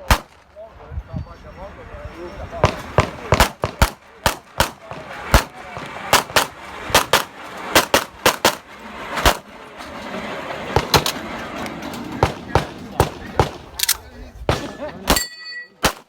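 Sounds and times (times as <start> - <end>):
rapid pistol shots: 0.0 - 0.5, 2.6 - 8.6, 12.2 - 13.7.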